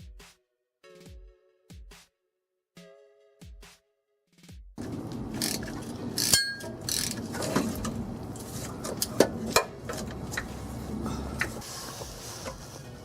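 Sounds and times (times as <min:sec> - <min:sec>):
ratchet clicking: 0:05.1 - 0:08.0
metal-on-metal clinks: 0:06.2 - 0:07.0
sharp metal clanks: 0:06.2 - 0:07.7
ringing metallic ping: 0:06.3 - 0:06.8.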